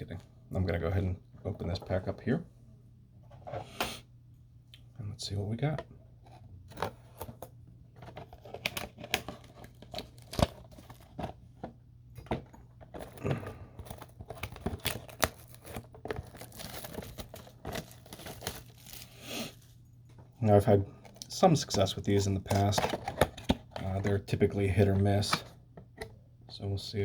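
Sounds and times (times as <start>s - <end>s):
faint steady low hum: 0.0s - 27.0s
card pack wrapper crinkling: 8.0s - 11.4s, 12.9s - 19.8s.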